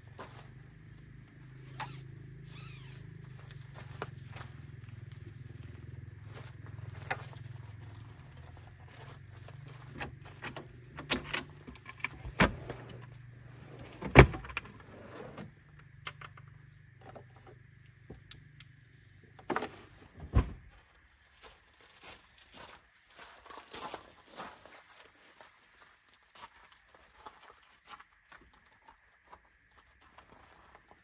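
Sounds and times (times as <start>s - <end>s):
high-pitched insect drone: 0.0s - 14.3s.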